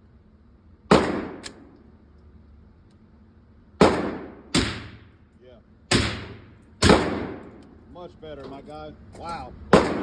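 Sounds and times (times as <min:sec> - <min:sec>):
gunshot echo: 0:00.9 - 0:01.4, 0:03.8 - 0:05.1, 0:05.9 - 0:07.5, 0:09.7 - 0:10.0
suppressed rifle gunshots: 0:00.9 - 0:01.6, 0:03.8 - 0:05.0, 0:05.9 - 0:07.5, 0:09.7 - 0:10.0.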